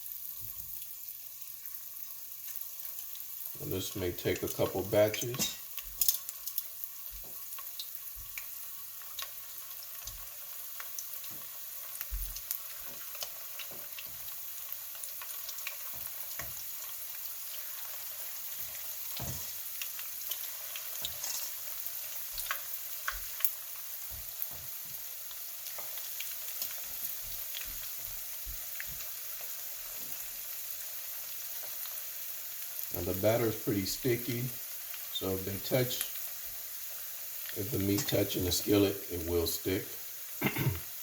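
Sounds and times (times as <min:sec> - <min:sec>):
chicken sizzling in hot oil: 0:00.0 - 0:41.0.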